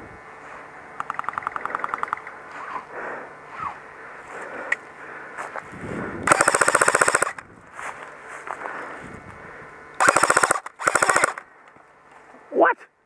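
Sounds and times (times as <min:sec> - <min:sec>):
airsoft gun full-auto burst: 0:06.2 - 0:07.4, 0:10.0 - 0:11.4.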